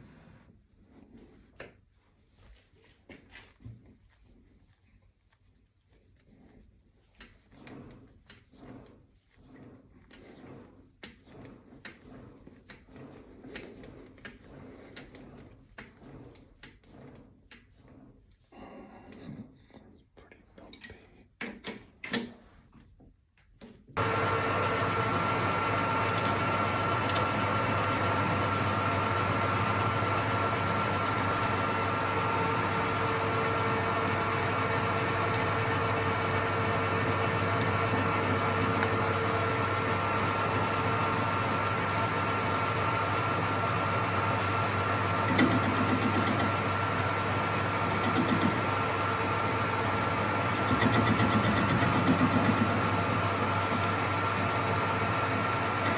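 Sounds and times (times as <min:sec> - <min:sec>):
lathe motor humming and whining: 0:24.0 - 0:55.9.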